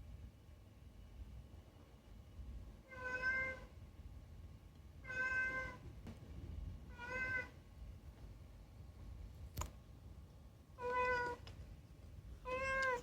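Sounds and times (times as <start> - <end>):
cat meowing: 2.9 - 3.7, 5.0 - 5.8, 6.9 - 7.6, 10.8 - 11.5, 12.4 - 13.0.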